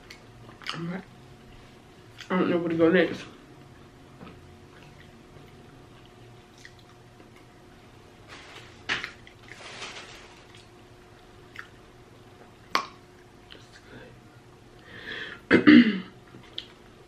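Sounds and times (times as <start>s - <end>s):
squishy chewing: 4.6s - 7.1s.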